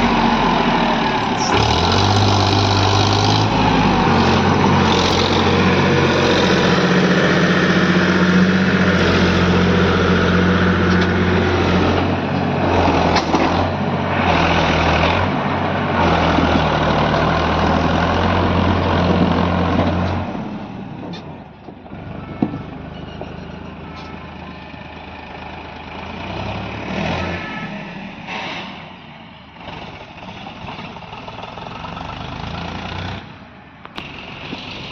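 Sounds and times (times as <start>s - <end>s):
diesel engine running: 0.0s - 32.4s, 33.2s - 34.9s.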